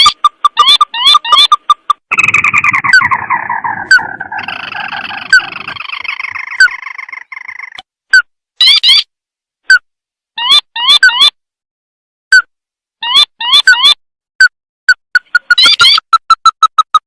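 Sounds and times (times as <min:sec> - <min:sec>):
chattering trill falling in pitch: 0:00.0 - 0:07.8.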